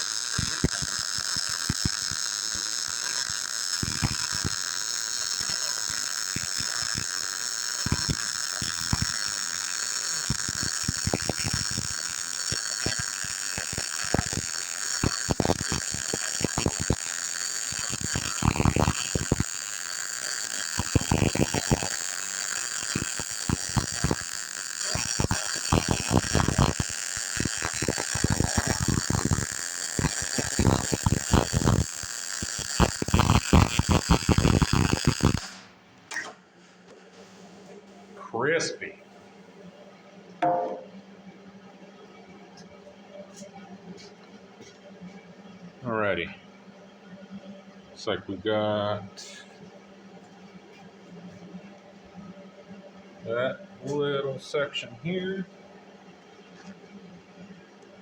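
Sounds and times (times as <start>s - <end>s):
welding arc hissing and crackling: 0.0s - 37.6s.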